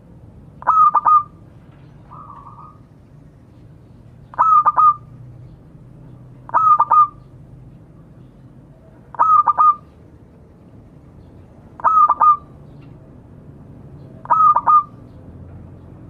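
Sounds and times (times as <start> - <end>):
dove cooing: 0.6 - 1.4, 2.1 - 2.8, 4.3 - 5.1, 6.5 - 7.2, 8.7 - 10.0, 11.8 - 12.6, 14.2 - 15.0.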